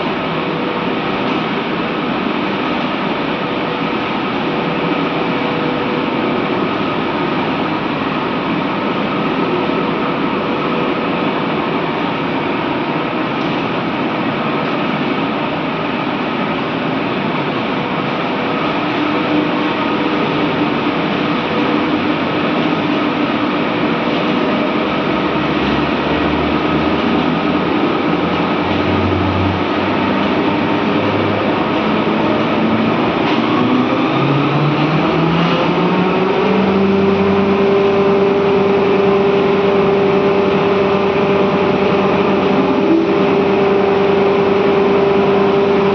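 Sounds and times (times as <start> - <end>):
steady hums: 0.0 - 45.9
steam boiler plant machinery: 0.0 - 45.9.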